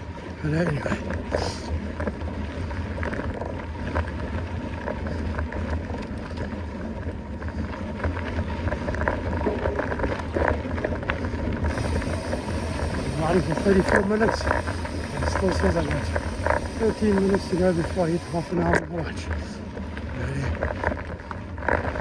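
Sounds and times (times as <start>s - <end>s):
wind rumble on microphone: 0.0s - 17.0s
mountain bike riding on trail: 0.0s - 22.0s.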